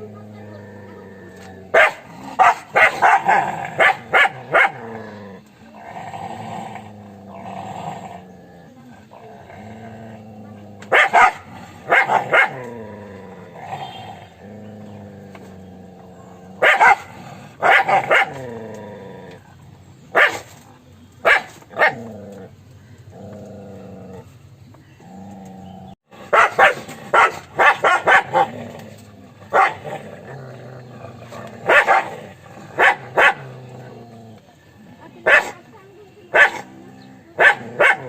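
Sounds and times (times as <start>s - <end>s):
dog barking: 1.7s - 4.9s, 10.9s - 12.7s, 16.6s - 18.4s, 20.1s - 20.5s, 21.2s - 22.0s, 26.2s - 28.5s, 29.5s - 29.8s, 31.6s - 32.2s, 32.8s - 33.5s, 35.2s - 35.6s, 36.3s - 36.7s, 37.4s - 38.0s.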